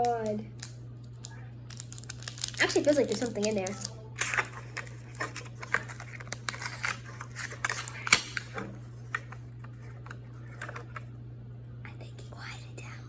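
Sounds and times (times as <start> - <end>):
plastic packaging crinkling: 0.0 - 11.0
low steady hum: 0.0 - 13.0.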